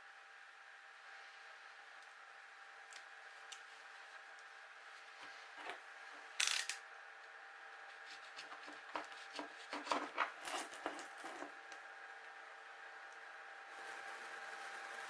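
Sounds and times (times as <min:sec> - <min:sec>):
faint steady hum: 0:00.0 - 0:15.0
rubbing and clicking handling noises: 0:07.9 - 0:11.6.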